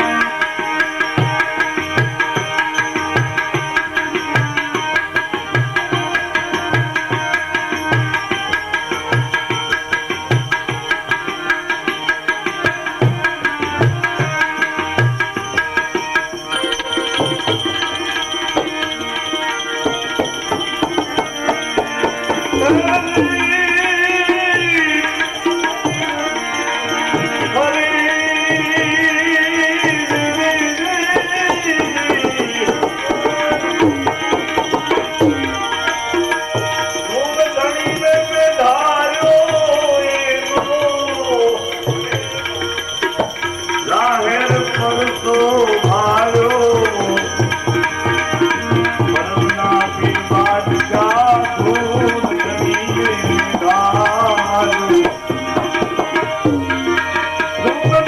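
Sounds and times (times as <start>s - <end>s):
tabla playing a rhythm: 0.0s - 58.0s
sliding wavering melody: 16.0s - 23.5s.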